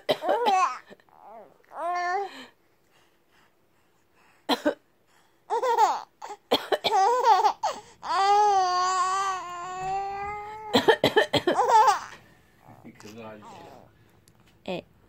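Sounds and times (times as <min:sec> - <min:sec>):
person coughing: 0:00.0 - 0:00.8, 0:04.5 - 0:04.8, 0:10.7 - 0:11.9.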